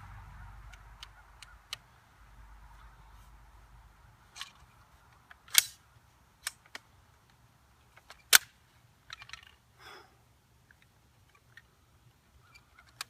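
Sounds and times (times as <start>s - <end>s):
airsoft gun clicks: 4.4s - 5.8s, 6.4s - 7.4s.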